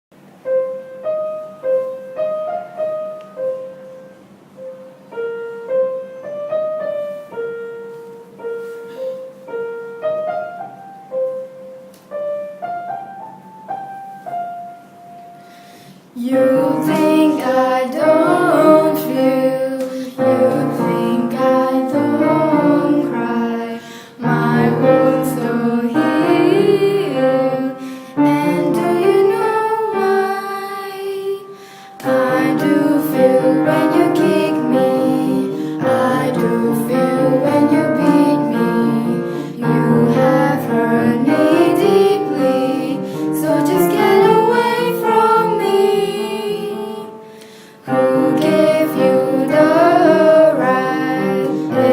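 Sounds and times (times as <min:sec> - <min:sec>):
woman singing slow melody: 0:16.2 - 0:51.9.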